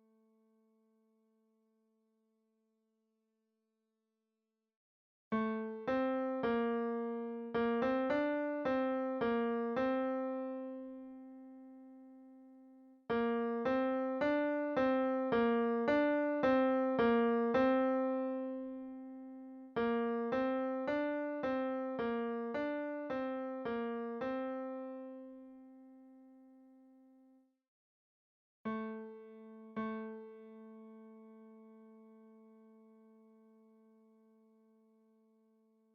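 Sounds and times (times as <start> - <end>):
piano melody: 13.1 - 19.0.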